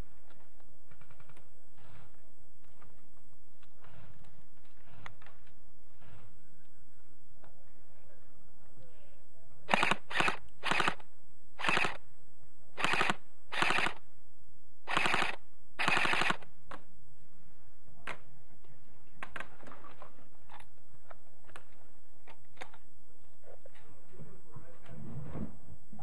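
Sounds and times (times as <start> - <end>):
airsoft gun full-auto bursts: 9.7 - 11.0, 11.6 - 12.0, 12.8 - 14.0, 14.9 - 16.4.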